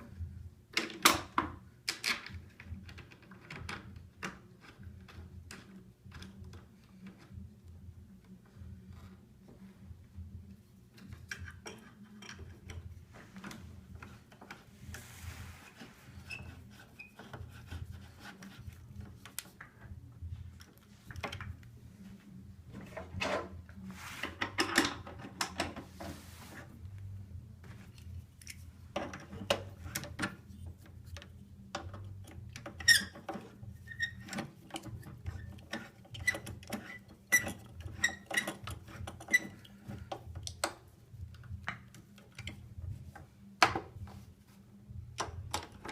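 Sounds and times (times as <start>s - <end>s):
clicks and knocks of parts: 0.7s - 7.4s, 27.7s - 44.2s
rustling and scraping: 8.3s - 45.0s.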